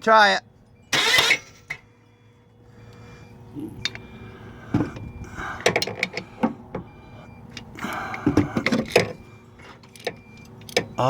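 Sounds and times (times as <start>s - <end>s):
starter straining: 0.9s - 1.8s
starter clicks and clunks: 0.9s - 1.9s, 3.8s - 4.1s, 4.7s - 11.0s.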